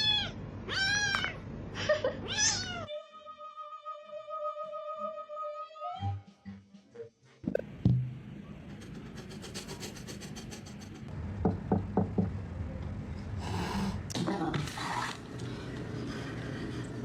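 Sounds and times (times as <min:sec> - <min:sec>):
rapid scraping on hard surface: 0:08.8 - 0:11.1
knocks: 0:11.4 - 0:12.4.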